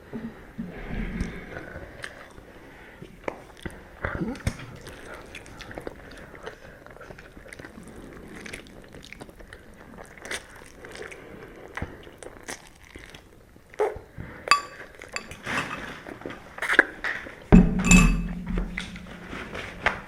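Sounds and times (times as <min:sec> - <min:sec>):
chewing and mouth sounds: 0:03.2 - 0:14.1
utensil clinking against bowl: 0:14.5 - 0:16.0, 0:17.6 - 0:19.2.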